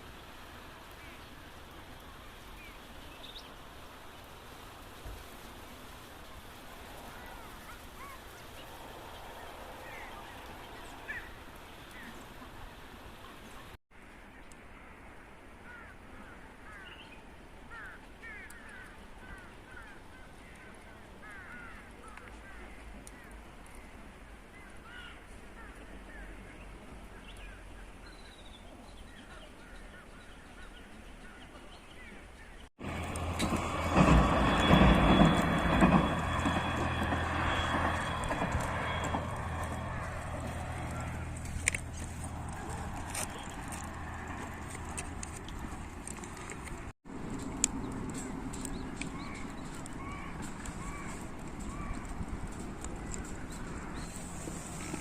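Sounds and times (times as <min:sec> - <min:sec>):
bird calls: 0:07.1 - 0:13.7, 0:48.5 - 0:52.2
birds calling: 0:07.1 - 0:13.8, 0:15.7 - 0:46.9, 0:47.8 - 0:55.0.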